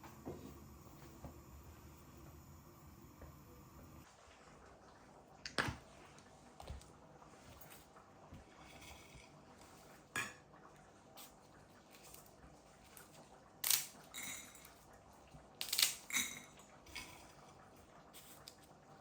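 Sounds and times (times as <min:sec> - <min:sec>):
kitchenware clinking and knocking: 0:15.6 - 0:17.4.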